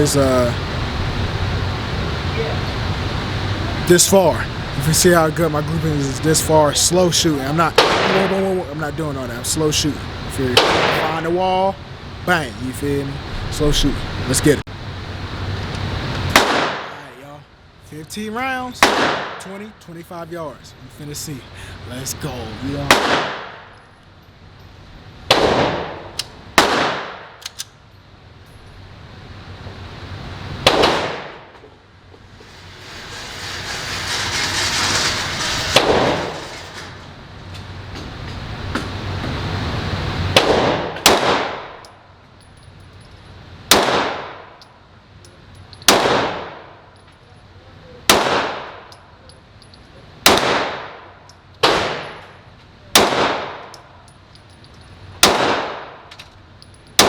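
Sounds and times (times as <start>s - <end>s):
rushing noise: 0.0s - 23.7s, 32.2s - 40.9s
pistol shots with ringing echo: 7.8s - 8.5s, 10.6s - 11.1s, 16.3s - 17.0s, 18.8s - 19.5s, 22.9s - 23.8s, 25.3s - 27.4s, 30.6s - 31.5s, 40.4s - 41.8s, 43.7s - 44.6s, 45.9s - 46.8s, 48.1s - 48.9s, 50.2s - 52.3s, 52.9s - 53.7s, 55.2s - 56.1s.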